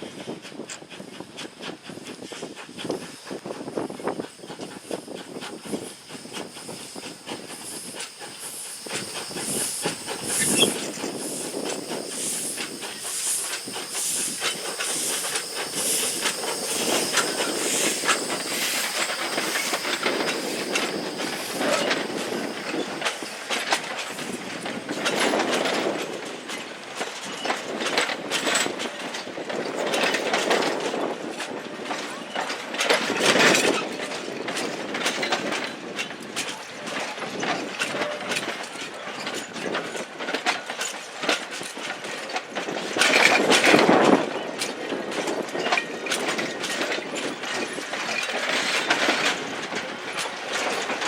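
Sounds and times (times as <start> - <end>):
train wheels clicking on rails: 0.0 - 51.0
steam hissing: 0.1 - 29.4.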